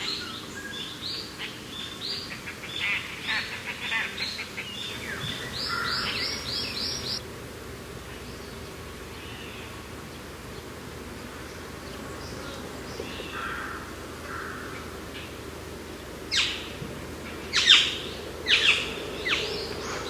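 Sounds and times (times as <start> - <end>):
birds singing: 0.0 - 7.2, 16.3 - 20.0
steady mountain wind: 4.8 - 7.2.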